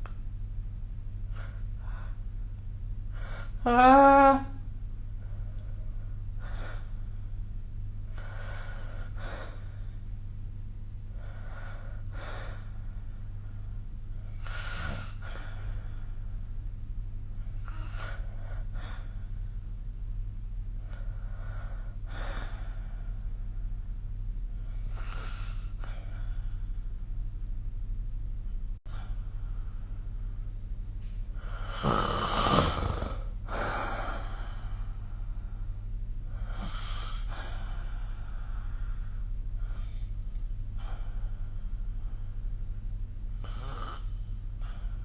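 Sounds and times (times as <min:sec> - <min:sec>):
steady low hum: 0:00.0 - 0:45.0
person snoring: 0:31.5 - 0:34.4.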